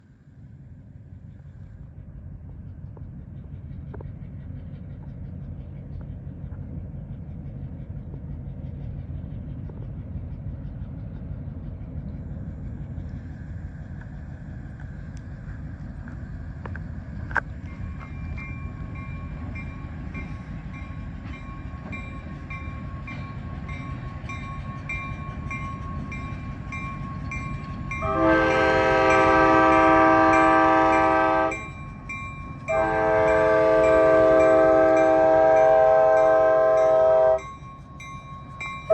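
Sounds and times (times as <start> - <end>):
diesel locomotive rumbling: 0.0 - 38.9
locomotive horn blast: 28.0 - 31.7, 32.7 - 37.5.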